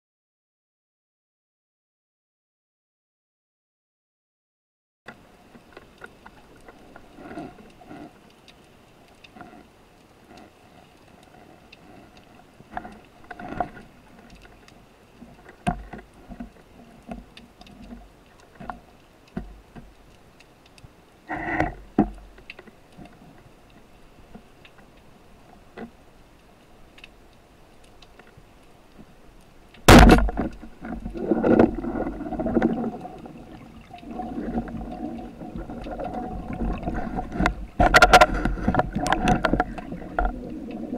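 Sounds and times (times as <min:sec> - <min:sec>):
underwater clicks and knocks: 0:11.2 - 0:25.0, 0:29.7 - 0:40.9
rushing bubbling water: 0:29.8 - 0:40.9
loud underwater thump: 0:29.9 - 0:30.5.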